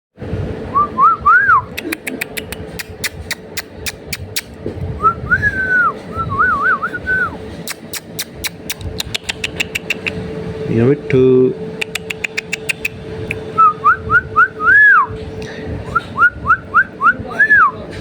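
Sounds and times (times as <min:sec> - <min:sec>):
steady hum: 0:00.2 - 0:18.0
sharp rapid ticks: 0:01.7 - 0:04.6, 0:07.6 - 0:10.2, 0:11.8 - 0:13.5.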